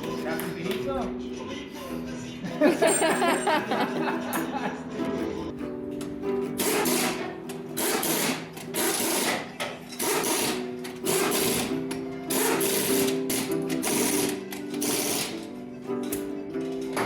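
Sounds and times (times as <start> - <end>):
background music: 0.0 - 17.0
power tool rattling: 6.6 - 15.4.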